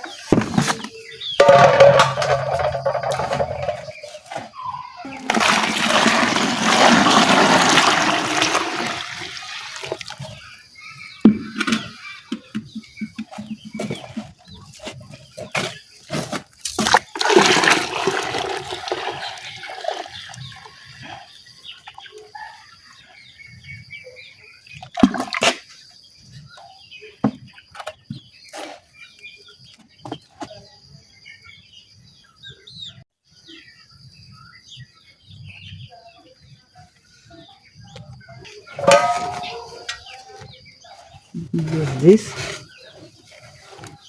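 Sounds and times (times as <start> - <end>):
container knocking and clattering: 1.4 - 4.1, 5.1 - 10.4, 16.7 - 20.3, 38.7 - 40.1
water sloshing and pouring: 5.1 - 10.5, 16.6 - 21.4, 24.8 - 25.6, 38.7 - 39.8.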